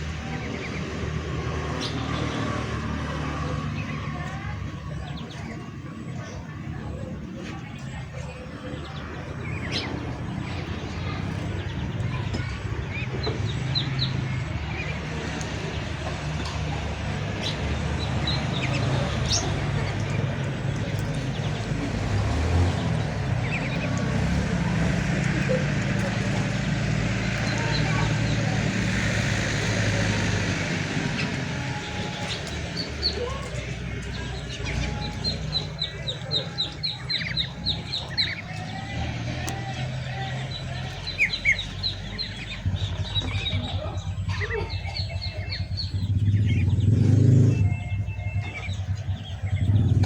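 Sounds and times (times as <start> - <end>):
songbirds chirping: 0.0 - 50.0
bird chirping: 40.3 - 50.0.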